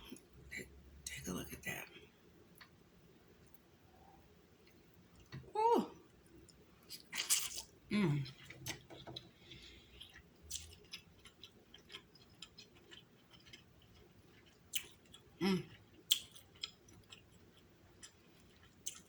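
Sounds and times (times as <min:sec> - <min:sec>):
chewing with wet mouth clicks: 0:06.4 - 0:19.0.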